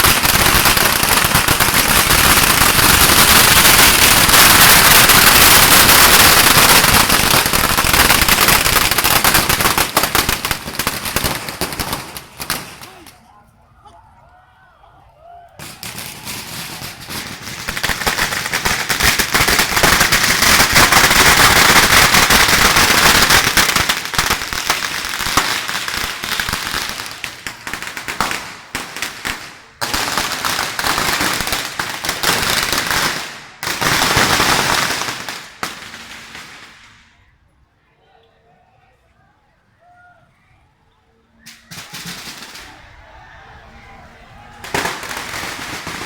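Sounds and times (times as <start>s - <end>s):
string of firecrackers crackling: 0.0s - 14.4s, 15.5s - 37.2s, 41.4s - 46.0s.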